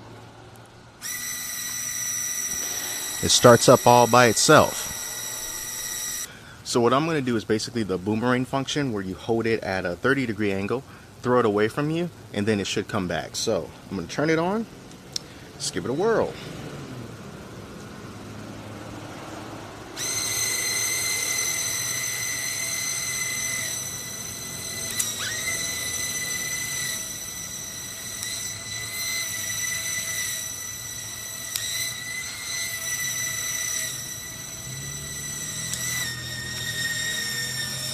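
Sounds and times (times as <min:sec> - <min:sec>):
small motors whining: 0:00.0 - 0:06.4, 0:14.2 - 0:37.9
sharp clicks: 0:00.5 - 0:06.3, 0:14.9 - 0:15.3, 0:20.0 - 0:37.9.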